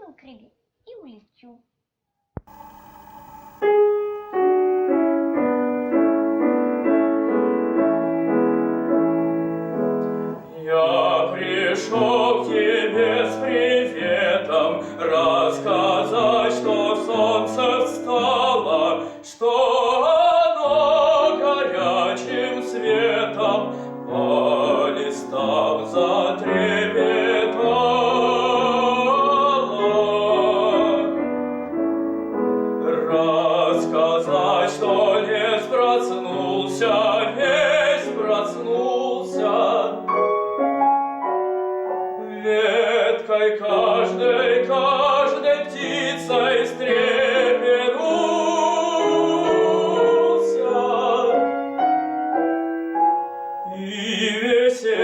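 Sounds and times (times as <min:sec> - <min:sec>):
slow piano music: 0:02.5 - 0:55.0
operatic voice singing: 0:10.4 - 0:31.4, 0:32.8 - 0:40.1, 0:42.2 - 0:51.7, 0:53.7 - 0:55.0.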